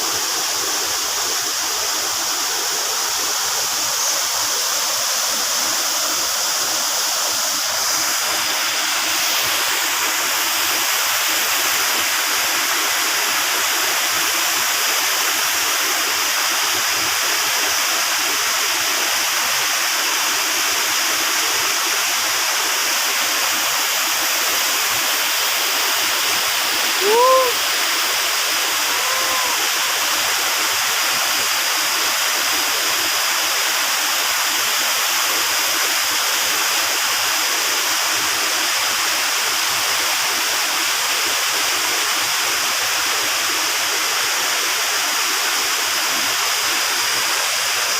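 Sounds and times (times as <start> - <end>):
waterfall rushing: 0.0 - 47.9
rising and falling call: 27.0 - 27.6, 28.8 - 30.0.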